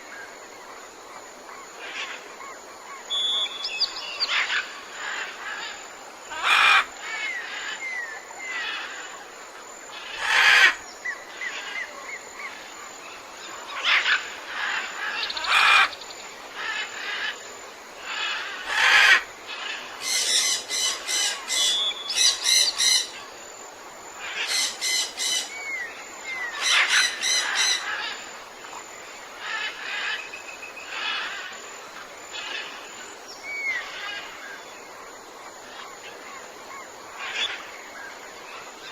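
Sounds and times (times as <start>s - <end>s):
loud harsh bird calls: 24.2s - 28.2s.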